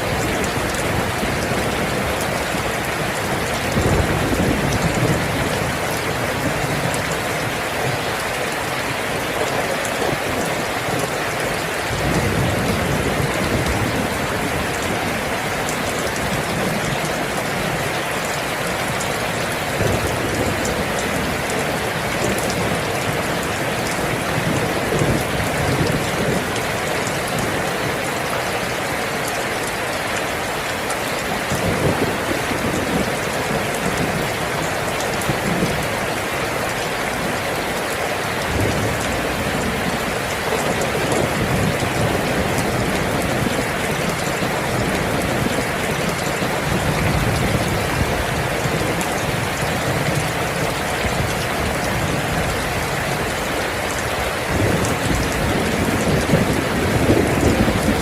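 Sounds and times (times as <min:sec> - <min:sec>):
dense rainfall: 0:00.0 - 0:58.0.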